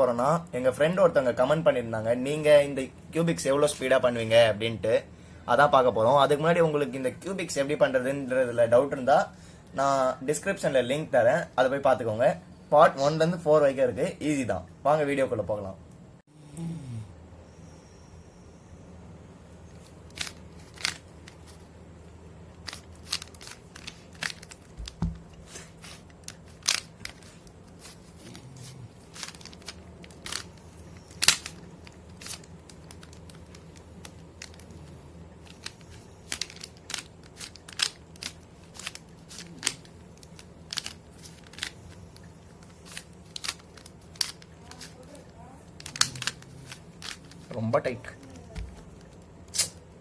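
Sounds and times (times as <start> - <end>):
puzzle cube plastic clicks: 20.1 - 21.6, 22.6 - 28.0, 29.1 - 47.5.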